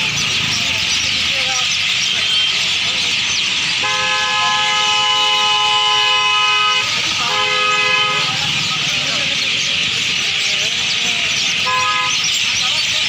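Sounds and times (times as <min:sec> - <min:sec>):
flock of birds chirping: 0:00.0 - 0:13.0
multi-tone horn blasts: 0:03.8 - 0:08.4, 0:11.6 - 0:12.3.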